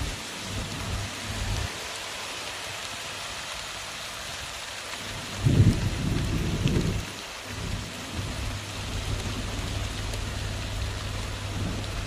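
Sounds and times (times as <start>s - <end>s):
heavy rain hissing: 0.0s - 12.0s
low rumble: 7.6s - 12.0s
low hum: 8.1s - 12.0s.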